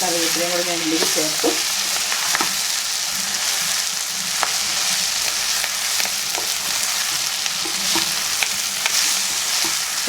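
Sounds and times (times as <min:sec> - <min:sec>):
meat sizzling in oil: 0:00.0 - 0:10.0
spatula scraping and tapping pan: 0:01.0 - 0:02.7, 0:04.3 - 0:10.0.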